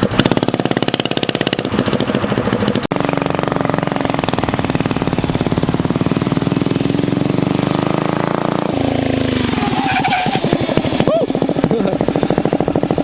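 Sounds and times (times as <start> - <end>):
minibike engine running hard: 0.0 - 13.0.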